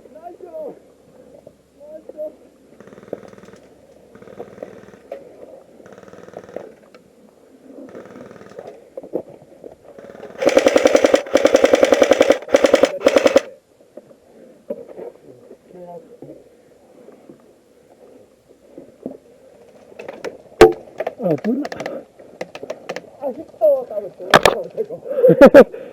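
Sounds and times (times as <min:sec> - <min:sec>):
airsoft rifle firing bursts: 0:02.8 - 0:05.2, 0:05.8 - 0:06.8, 0:07.8 - 0:08.9, 0:10.0 - 0:13.5.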